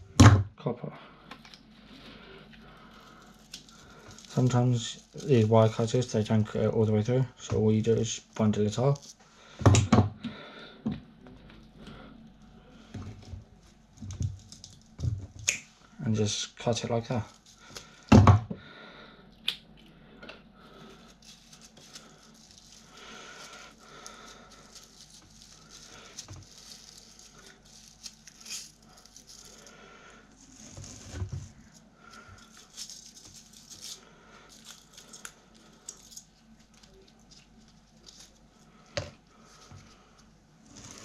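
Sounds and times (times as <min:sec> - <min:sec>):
wire rattling and rustling: 0:21.0 - 0:29.7.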